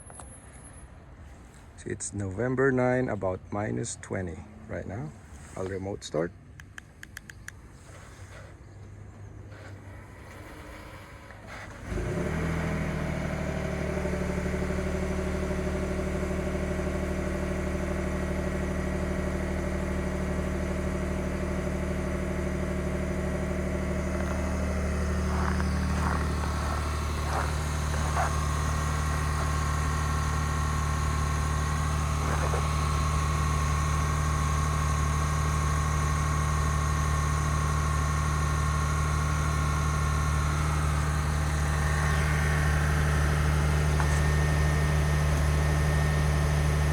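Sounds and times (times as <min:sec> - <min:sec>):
truck engine fast idle: 0:09.5 - 0:46.9
steady whine: 0:20.4 - 0:36.2.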